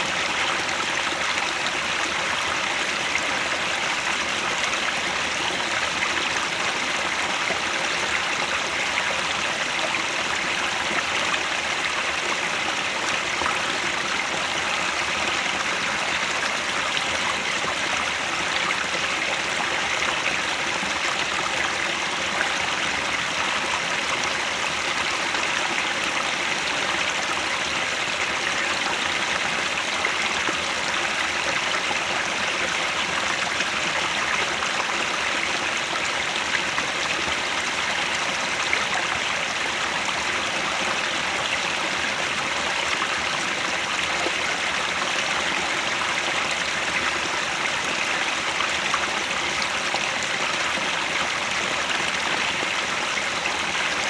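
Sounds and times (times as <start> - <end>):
stream flowing: 0.0 - 54.0.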